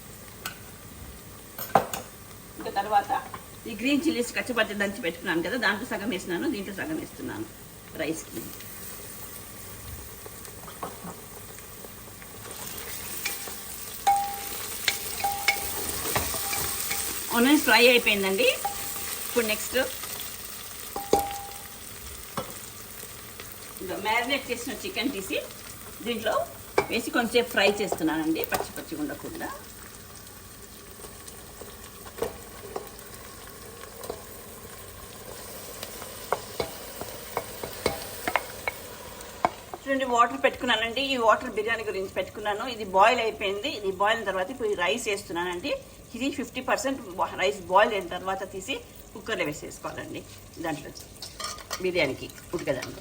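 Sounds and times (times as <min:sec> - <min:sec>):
onions sizzling in a pot: 0:00.0 - 0:53.0
spoon scraping a pot: 0:13.0 - 0:17.3, 0:51.2 - 0:51.9
spoon knocking against pot: 0:21.0 - 0:21.6.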